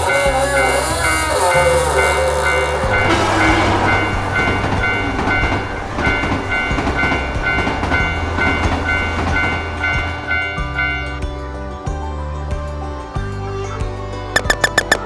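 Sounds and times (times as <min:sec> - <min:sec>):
train rumbling past: 0:01.8 - 0:10.9
railroad crossing bell dinging: 0:02.0 - 0:11.2.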